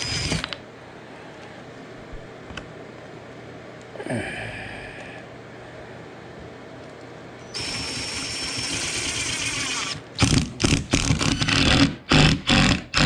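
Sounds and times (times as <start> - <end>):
power drill driving a screw: 0.0 - 0.6, 7.5 - 13.0.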